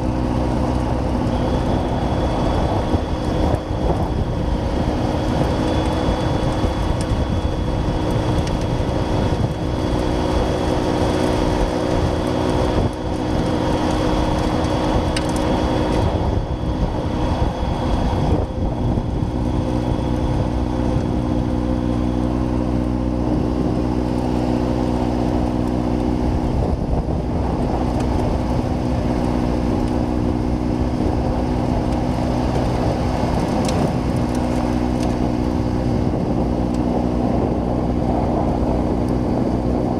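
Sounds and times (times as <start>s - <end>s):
tractor diesel engine under load: 0.0s - 39.9s.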